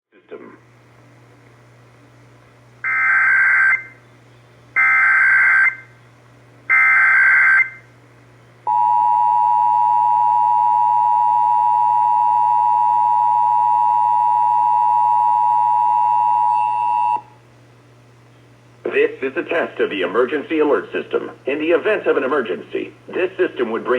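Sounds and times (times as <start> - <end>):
two-tone attention signal: 8.7 - 17.3.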